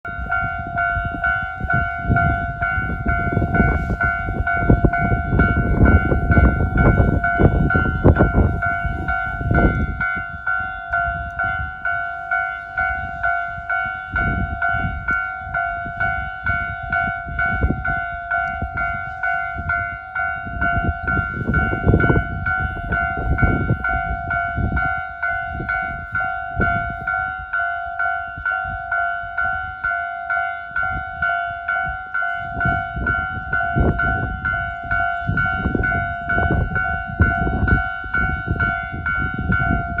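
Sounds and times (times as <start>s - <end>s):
train passing: 0.0s - 40.0s
train wheel clatter: 0.1s - 30.2s.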